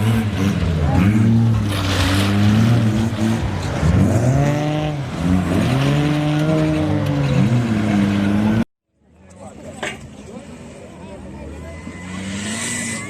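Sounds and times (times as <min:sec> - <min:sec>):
engine revving hard: 0:00.0 - 0:08.6, 0:11.9 - 0:13.0.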